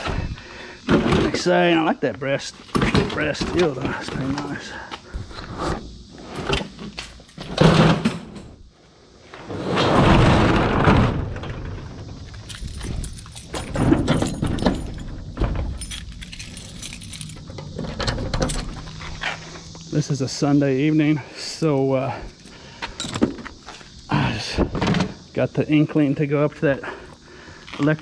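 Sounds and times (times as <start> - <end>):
small metal objects clinking: 12.4 - 19.2, 22.4 - 23.3.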